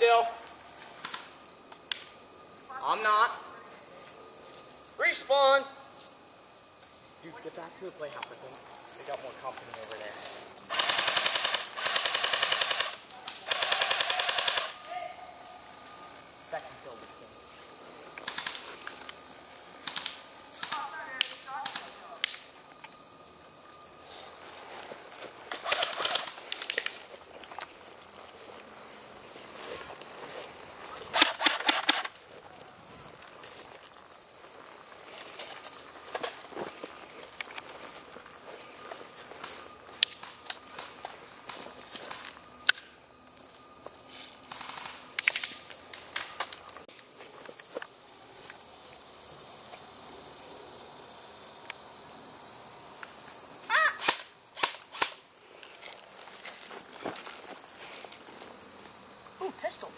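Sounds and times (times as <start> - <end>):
insects droning: 0.0 - 59.9
airsoft guns firing: 10.7 - 14.8, 25.6 - 26.4, 31.1 - 32.1.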